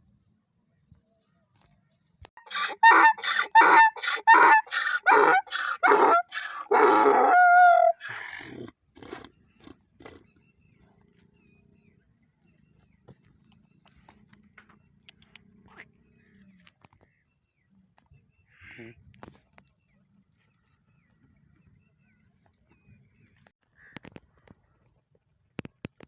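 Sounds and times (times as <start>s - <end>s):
donkey braying: 2.4s - 9.3s.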